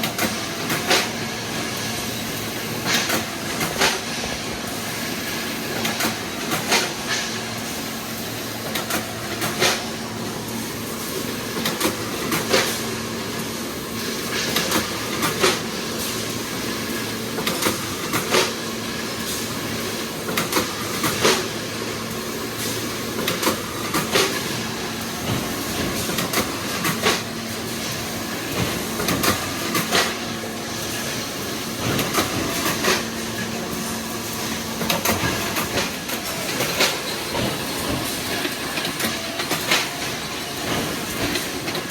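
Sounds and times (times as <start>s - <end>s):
welding machine clattering: 22.8s - 41.9s.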